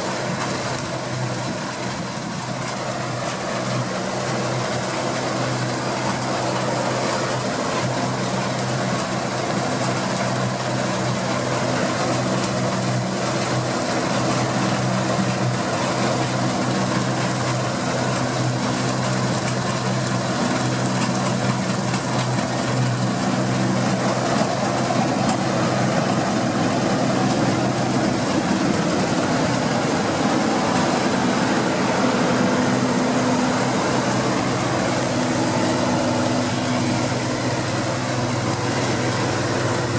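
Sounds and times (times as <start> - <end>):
combine harvester running: 0.0 - 39.9.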